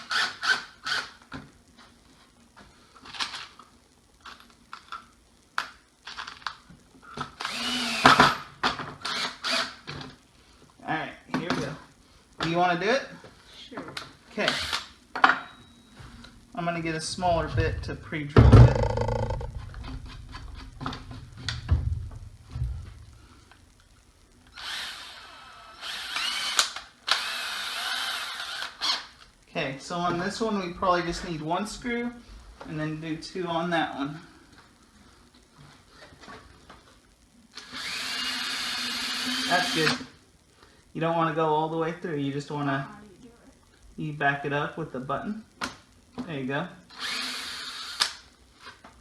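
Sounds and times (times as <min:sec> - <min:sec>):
electric drill whining: 0:07.4 - 0:09.8, 0:24.5 - 0:29.1, 0:37.6 - 0:40.0, 0:46.9 - 0:48.2.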